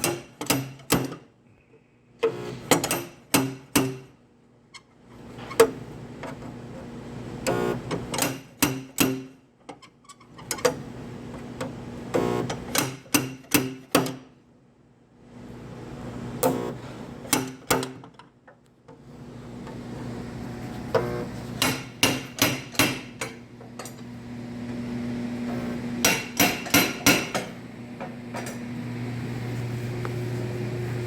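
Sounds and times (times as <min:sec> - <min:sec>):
low machine hum: 0:19.0 - 0:31.0.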